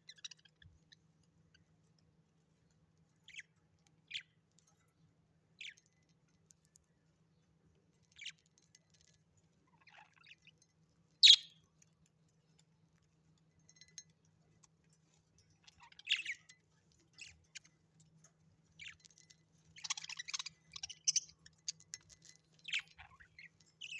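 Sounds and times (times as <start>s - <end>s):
birds chirping: 11.2s - 11.6s, 15.6s - 17.7s, 18.8s - 23.9s.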